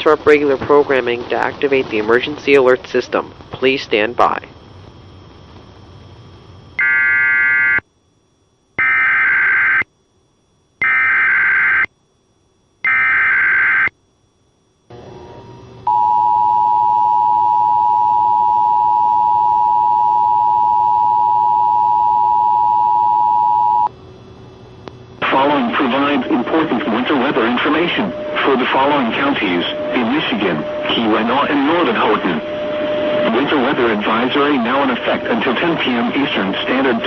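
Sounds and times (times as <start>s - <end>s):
screeching digital data bursts: 25.4s - 37.0s.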